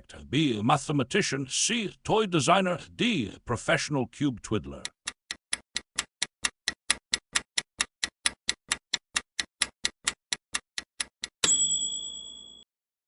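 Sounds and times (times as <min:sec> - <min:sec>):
clock-like ticking: 0:03.8 - 0:11.4
bright bell ding: 0:11.4 - 0:12.7.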